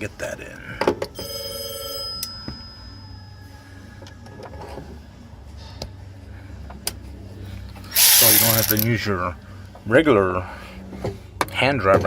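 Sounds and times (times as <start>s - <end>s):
tool clicking and scraping: 8.0s - 8.9s.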